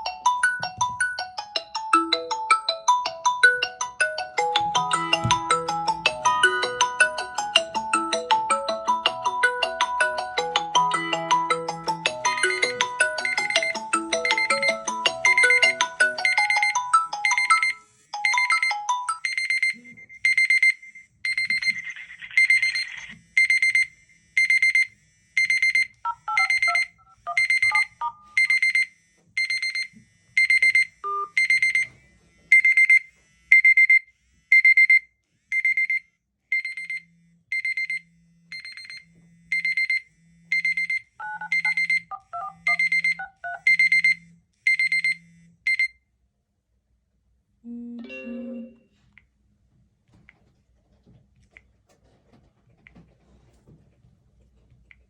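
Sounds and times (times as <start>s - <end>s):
marimba-like ringtone melody: 0.0s - 19.8s, 26.3s - 28.6s, 48.0s - 49.0s
lower melody: 47.7s - 49.0s.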